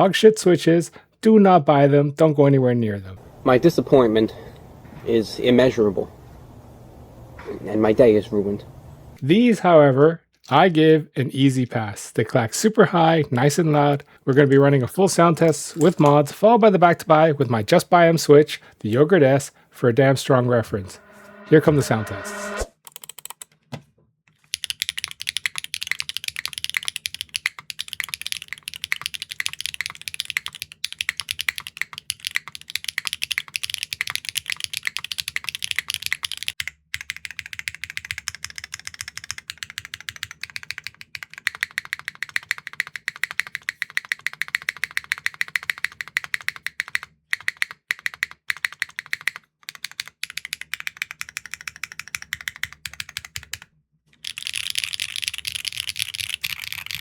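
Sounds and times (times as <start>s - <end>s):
fast typing on mechanical keyboard: 24.4s - 57.0s.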